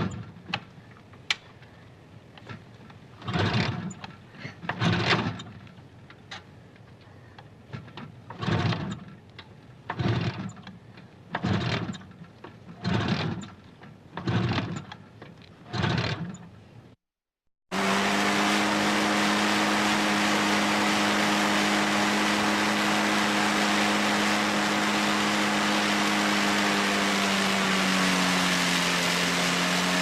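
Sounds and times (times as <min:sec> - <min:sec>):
motorcycle engine revving: 0:17.7 - 0:30.0
motorcycle engine running loudly: 0:17.7 - 0:30.0.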